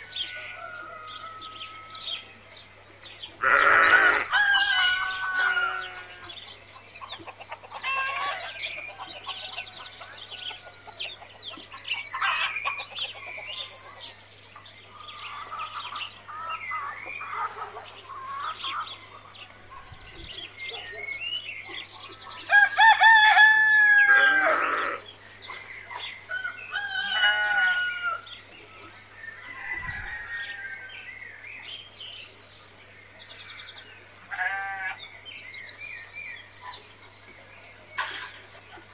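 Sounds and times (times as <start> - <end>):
rooster crowing: 3.5 - 6.2, 22.5 - 25.0, 26.4 - 28.2, 29.2 - 31.0
chickens clucking: 4.1 - 22.6.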